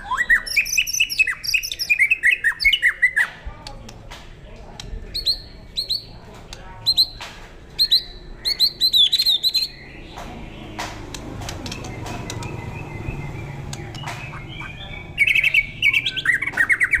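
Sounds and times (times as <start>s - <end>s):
songbird singing: 0.0s - 4.0s, 4.6s - 17.0s.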